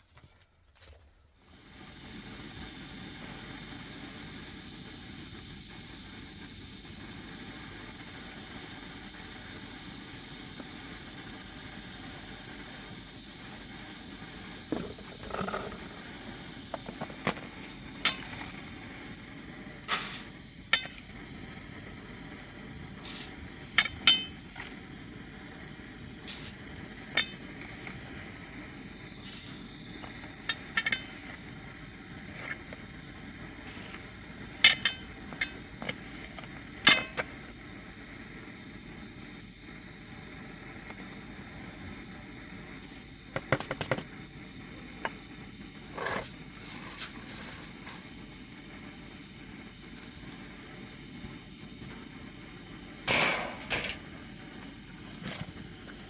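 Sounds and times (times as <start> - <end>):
background hiss: 1.3 - 56.0
hard objects knocking and clinking: 14.7 - 16.1.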